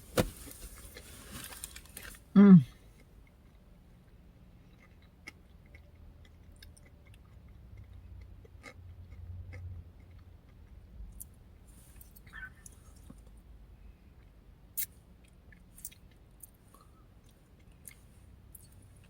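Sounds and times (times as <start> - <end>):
person chewing: 3.0 - 11.3, 15.8 - 19.0.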